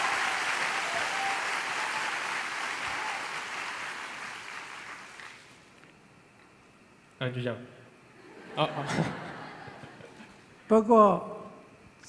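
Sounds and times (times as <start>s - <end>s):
audience applauding: 0.0s - 5.6s.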